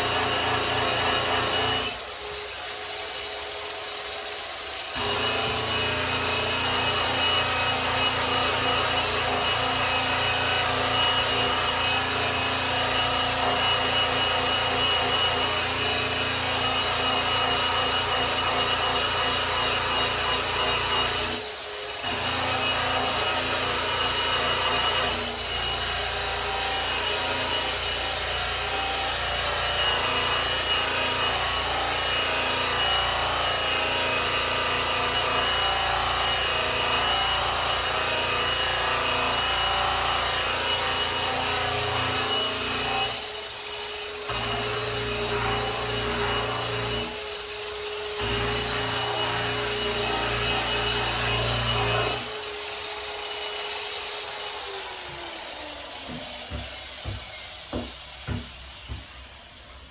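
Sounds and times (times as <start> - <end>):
electric polisher whine: 54.4 - 59.9.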